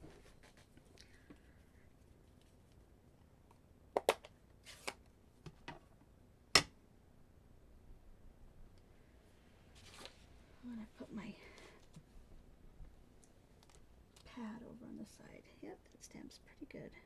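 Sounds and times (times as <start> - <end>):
sharp plastic snap: 4.0 - 5.0, 6.6 - 6.8.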